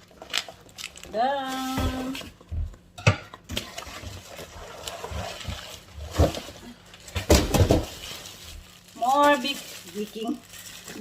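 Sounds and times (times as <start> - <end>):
packaging being handled: 4.1 - 11.0.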